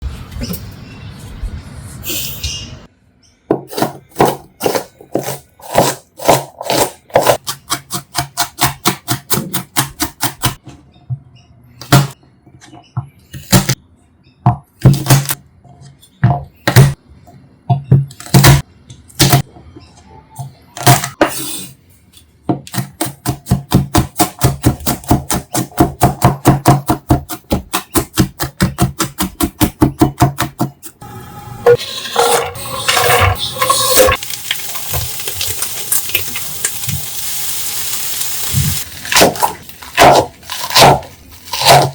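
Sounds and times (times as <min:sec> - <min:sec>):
knife chopping on cutting board: 0:03.6 - 0:10.6, 0:22.6 - 0:30.8.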